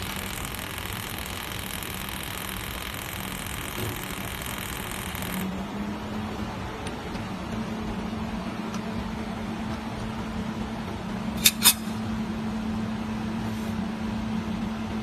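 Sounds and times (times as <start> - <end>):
welding machine humming: 0.0 - 5.6, 11.4 - 12.0
short sharp sounds: 11.4 - 12.0.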